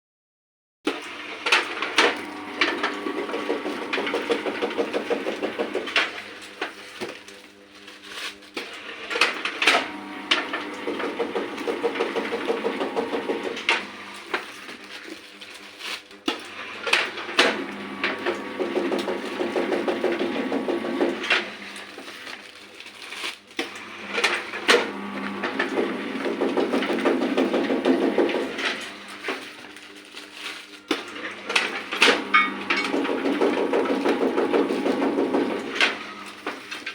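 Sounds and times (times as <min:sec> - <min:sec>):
press machine mechanical rattling: 0:01.5 - 0:06.3, 0:09.1 - 0:14.2, 0:16.6 - 0:21.9, 0:23.8 - 0:29.5, 0:30.9 - 0:36.9.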